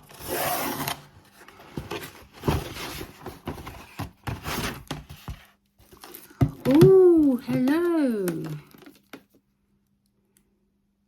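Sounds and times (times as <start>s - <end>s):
packaging rustling and scraping: 0.0s - 6.4s.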